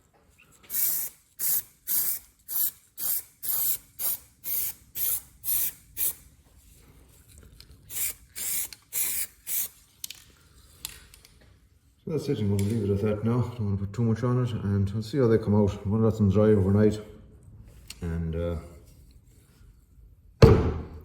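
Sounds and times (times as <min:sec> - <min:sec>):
spray-paint can hissing: 0:00.7 - 0:06.2, 0:07.9 - 0:09.8.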